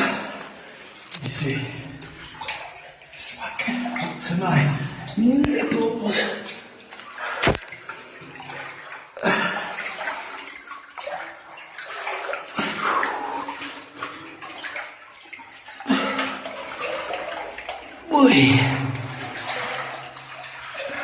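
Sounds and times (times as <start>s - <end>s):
water sloshing and splashing: 0.0s - 21.0s.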